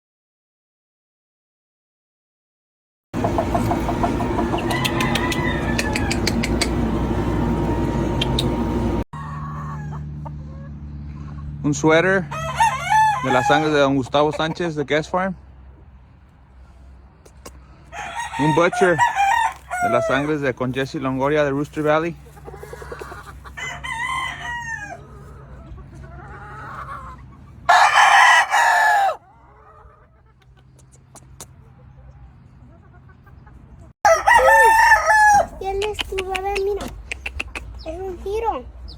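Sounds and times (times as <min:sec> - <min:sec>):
loud low rumble: 0:03.2 - 0:09.1
roosters crowing: 0:03.2 - 0:14.6, 0:17.7 - 0:30.4, 0:34.0 - 0:35.7
chickens calling faintly: 0:03.2 - 0:38.9
sharp clicks: 0:04.6 - 0:06.8.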